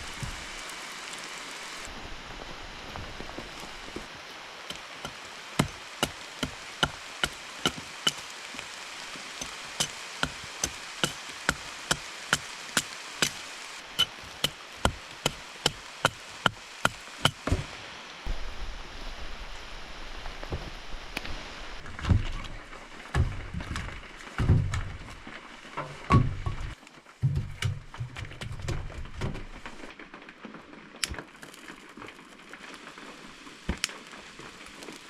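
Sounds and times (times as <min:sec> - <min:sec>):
chopping wood: 0:04.7 - 0:08.3, 0:09.4 - 0:17.7, 0:23.1 - 0:25.1, 0:25.8 - 0:29.5.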